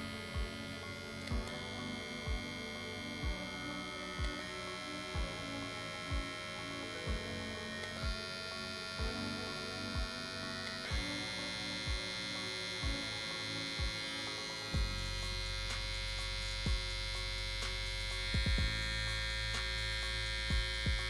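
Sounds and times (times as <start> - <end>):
hair clipper humming: 0.0 - 21.0
soft low thumps: 0.3 - 0.6, 2.2 - 2.5, 3.2 - 3.5, 5.2 - 5.4, 7.1 - 7.3, 14.8 - 15.1, 16.7 - 17.1, 18.3 - 19.1, 20.4 - 21.0.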